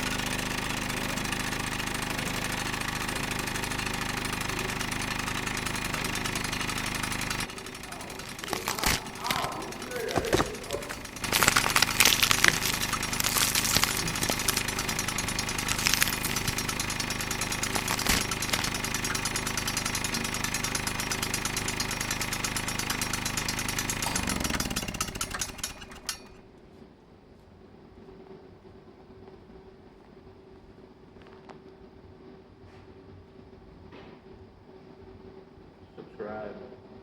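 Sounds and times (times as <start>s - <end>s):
power tool rattling: 0.0s - 26.5s.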